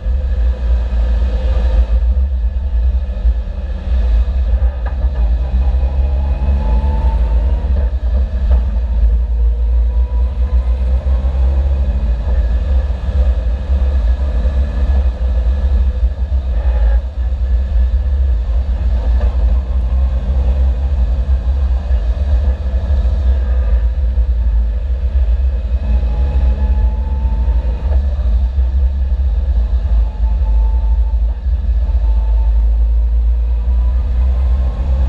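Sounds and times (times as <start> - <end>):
engine accelerating: 0.0 - 35.0.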